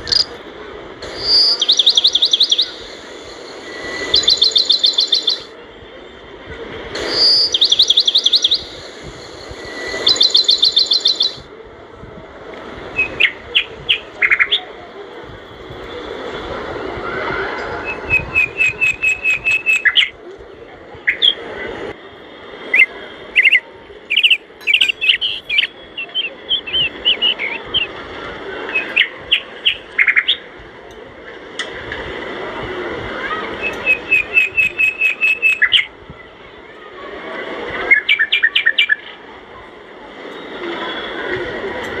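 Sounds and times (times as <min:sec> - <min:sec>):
steady rushing hiss: 0:00.0 - 0:19.2
birds chirping: 0:01.0 - 0:05.5, 0:07.0 - 0:08.9, 0:09.6 - 0:11.5, 0:12.9 - 0:14.7, 0:17.8 - 0:20.2, 0:22.7 - 0:28.0, 0:28.6 - 0:30.5, 0:33.5 - 0:35.9.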